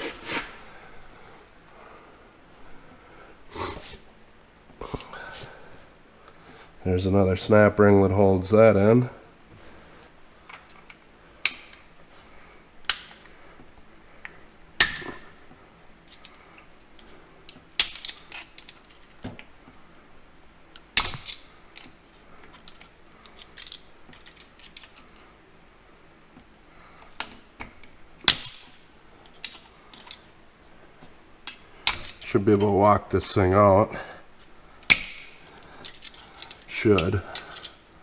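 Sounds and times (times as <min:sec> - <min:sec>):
hand tools clicking on metal: 0:27.2 - 0:30.3, 0:34.8 - 0:37.8.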